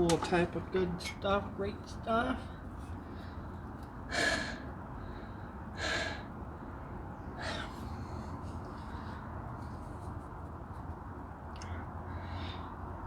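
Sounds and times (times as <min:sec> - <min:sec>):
low steady hum: 0:00.0 - 0:13.0
person breathing out heavily: 0:04.1 - 0:06.4, 0:07.4 - 0:08.2.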